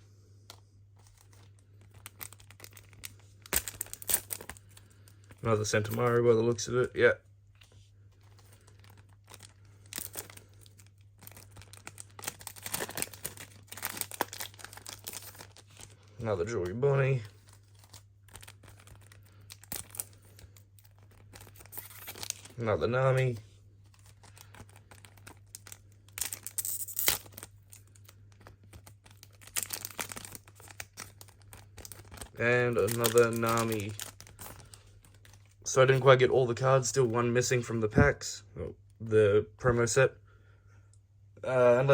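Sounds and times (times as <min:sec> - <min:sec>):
faint low hum: 0:00.0 - 0:41.9
wrapper tearing and crinkling: 0:01.0 - 0:06.2, 0:08.2 - 0:36.2.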